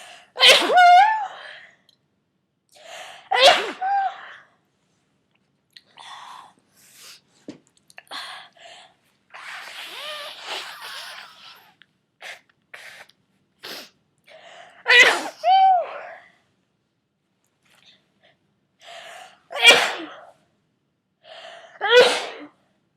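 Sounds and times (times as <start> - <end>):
person sneezing: 3.3 - 4.0, 9.4 - 13.9, 14.9 - 15.5, 19.5 - 20.3, 21.8 - 22.5.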